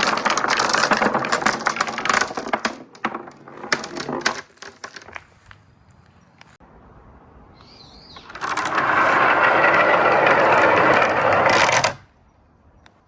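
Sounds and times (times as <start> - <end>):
marbles rolling along a rail: 0.0 - 5.3, 8.2 - 12.1.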